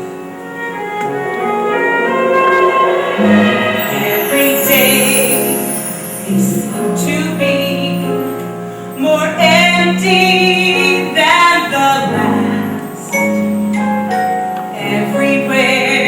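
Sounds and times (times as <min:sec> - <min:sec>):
instrumental accompaniment: 0:00.0 - 0:16.0
woman singing with vibrato: 0:01.8 - 0:08.4, 0:09.0 - 0:13.5, 0:14.7 - 0:16.0.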